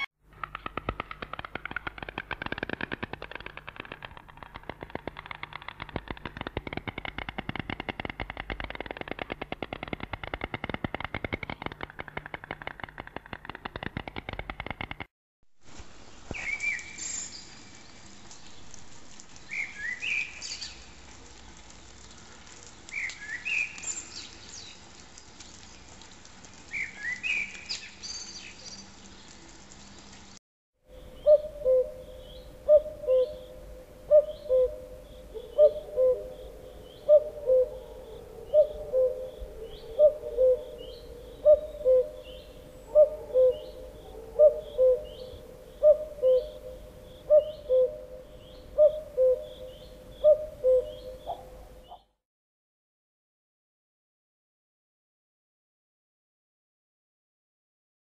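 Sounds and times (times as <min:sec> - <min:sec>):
bird rattling trill: 0:00.3 - 0:15.1
low hooting notes: 0:30.9 - 0:51.8.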